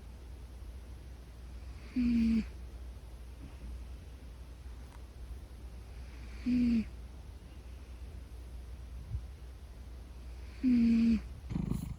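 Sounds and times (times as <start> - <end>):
cat snoring: 1.8 - 2.5, 6.2 - 6.9, 10.4 - 11.9.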